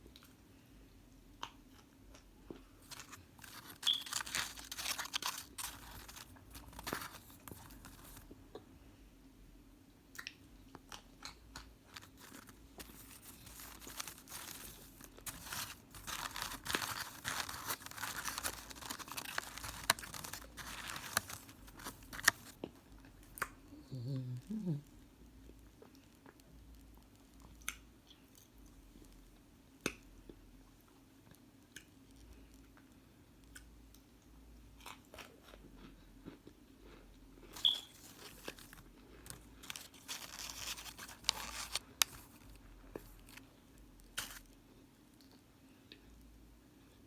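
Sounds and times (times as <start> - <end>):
crunchy food chewing: 1.4 - 8.6, 10.2 - 23.6, 34.8 - 44.6.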